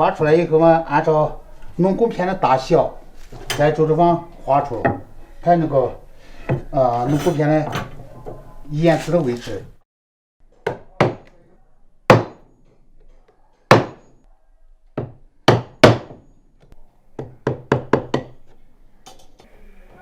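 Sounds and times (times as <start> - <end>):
tool striking wood: 12.1 - 12.5, 13.7 - 14.1, 15.0 - 16.3.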